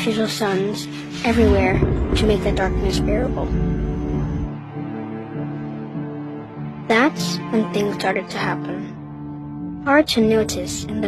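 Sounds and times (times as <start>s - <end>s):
deep low rumble: 1.3s - 4.5s
slow ominous low chords: 1.3s - 6.7s.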